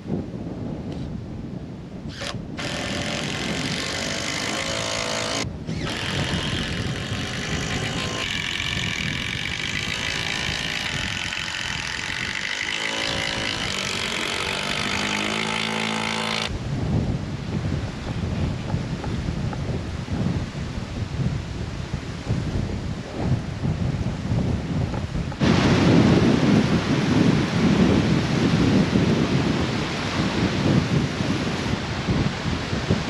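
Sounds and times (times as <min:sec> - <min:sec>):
wind noise on microphone: 0:00.0 - 0:33.0
motor running: 0:02.1 - 0:16.5.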